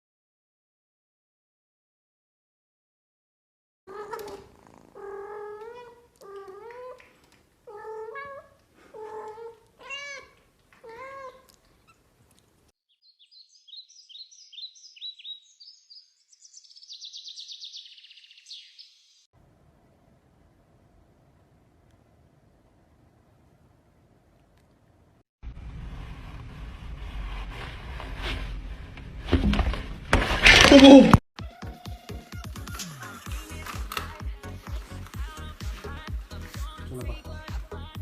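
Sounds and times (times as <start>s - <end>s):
cat meowing: 3.9s - 7.0s, 7.7s - 11.6s.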